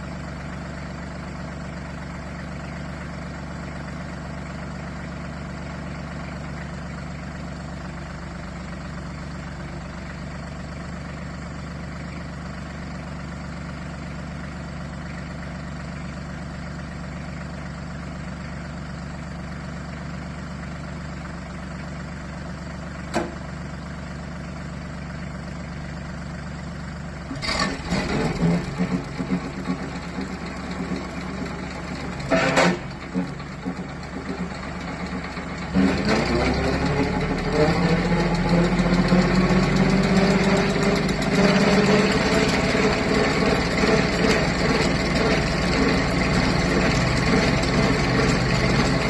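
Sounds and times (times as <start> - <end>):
diesel tractor engine idling: 0.0 - 49.0
loud irregular clatter: 27.4 - 34.6.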